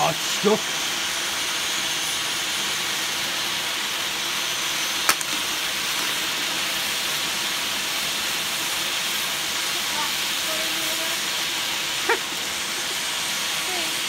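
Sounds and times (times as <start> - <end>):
firework hissing: 0.0 - 14.0
sharp crack: 5.0 - 5.6.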